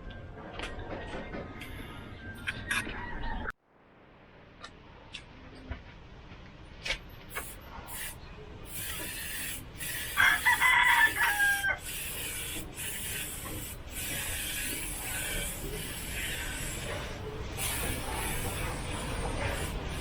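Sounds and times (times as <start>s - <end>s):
spray gun hissing: 7.3s - 20.0s
rooster crowing: 10.2s - 11.9s.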